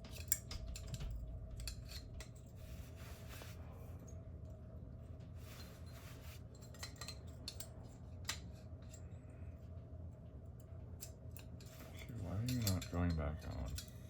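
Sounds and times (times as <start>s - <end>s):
steady low hum: 0.0s - 14.0s
metal parts clicking and scraping: 11.0s - 14.0s.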